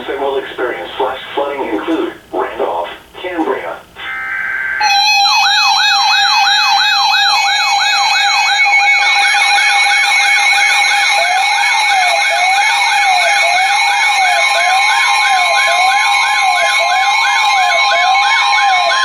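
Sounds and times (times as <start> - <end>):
electronic siren yelp: 4.0 - 19.0
siren wail: 4.0 - 19.0.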